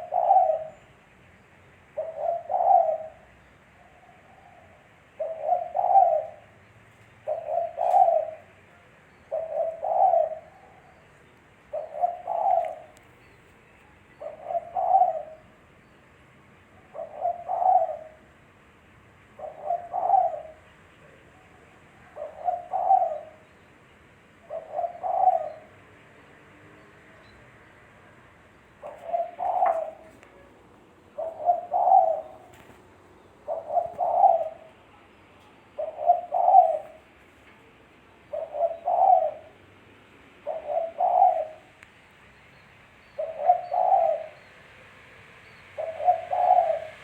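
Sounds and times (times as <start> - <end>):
dove cooing: 0.0 - 1.0, 1.9 - 6.6, 7.2 - 8.7, 9.3 - 13.0, 14.1 - 15.7, 16.8 - 18.4, 19.3 - 21.2, 22.0 - 23.5, 24.4 - 25.9, 28.8 - 30.5, 31.1 - 32.8, 33.4 - 34.9, 35.7 - 37.1, 38.2 - 41.8, 43.2 - 44.7, 45.6 - 47.0.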